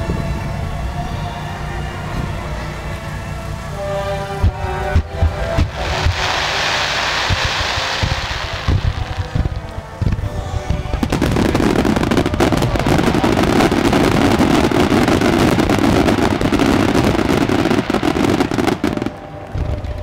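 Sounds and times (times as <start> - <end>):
fireworks bursting with crackle: 4.4 - 20.0.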